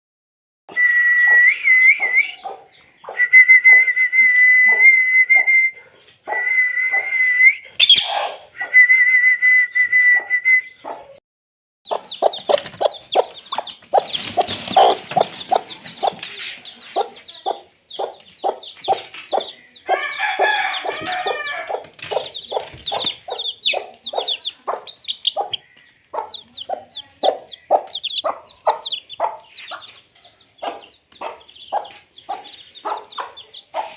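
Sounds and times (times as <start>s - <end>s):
parrot whistling and calling: 0.7s - 5.7s, 6.3s - 9.0s.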